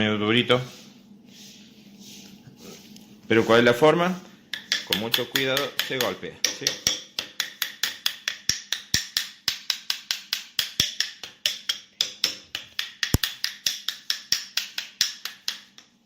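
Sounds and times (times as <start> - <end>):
metallic tapping on motor shaft: 4.5 - 16.0.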